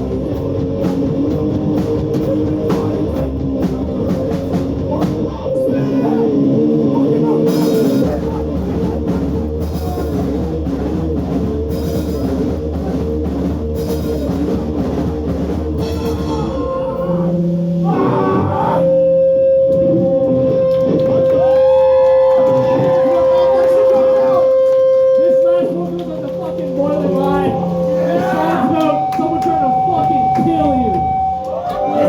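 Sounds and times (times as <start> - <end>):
hardcore punk band playing: 0.0 - 32.0.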